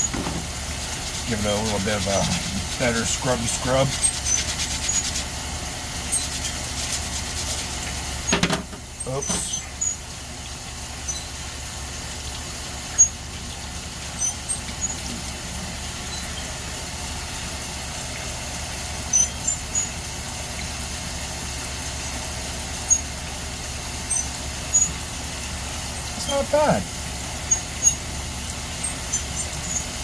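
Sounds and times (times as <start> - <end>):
high squeaks of scrubbed stone: 1.1 - 5.3, 6.0 - 7.7.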